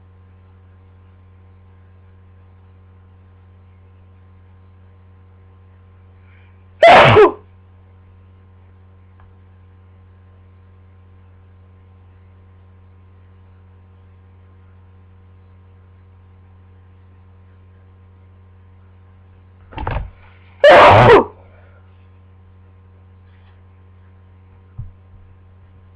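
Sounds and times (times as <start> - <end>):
electrical hum: 0.0 - 25.9
person sneezing: 6.8 - 7.4, 20.6 - 21.5.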